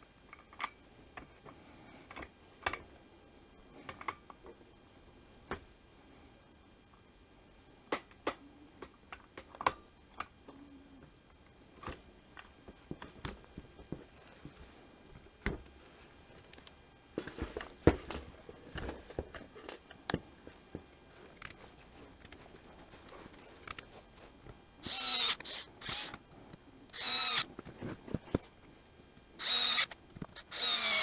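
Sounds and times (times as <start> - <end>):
plastic parts and tools clicking: 24.8 - 28.6, 29.4 - 31.0.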